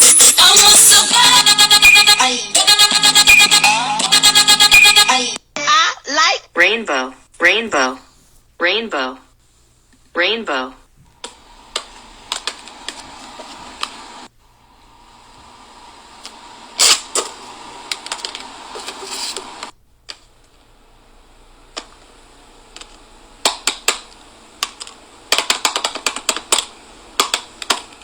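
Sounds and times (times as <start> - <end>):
plastic fidget toys clicking: 22.7 - 28.0.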